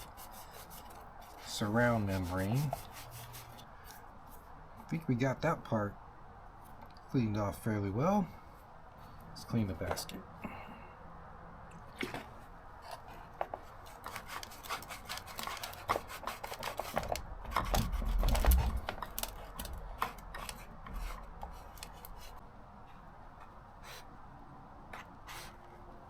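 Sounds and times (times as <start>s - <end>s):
hand scraping glue off metal: 0.0s - 4.0s, 12.0s - 22.4s.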